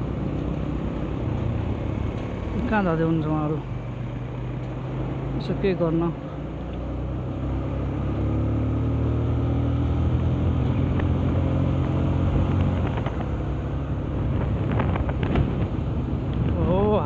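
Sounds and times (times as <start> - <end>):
wind rumbling on microphone: 9.7 - 17.0.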